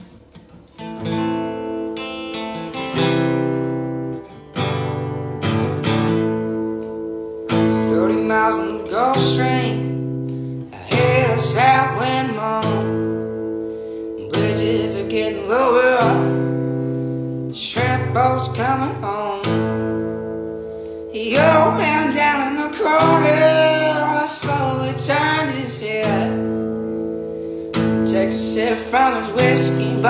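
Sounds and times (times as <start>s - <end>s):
acoustic guitar strumming: 0.0s - 30.0s
person singing: 6.8s - 16.8s, 17.4s - 20.0s, 21.0s - 26.6s, 27.8s - 30.0s.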